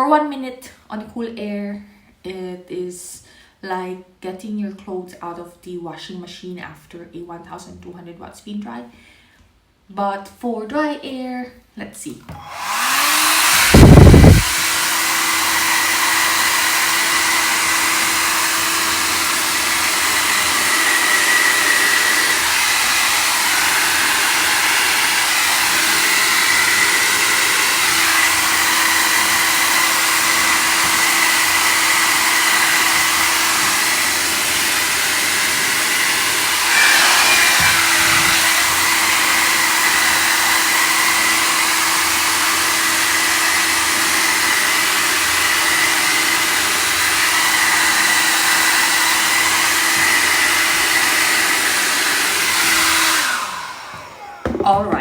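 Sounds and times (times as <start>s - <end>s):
hair dryer running: 12.3s - 55.0s.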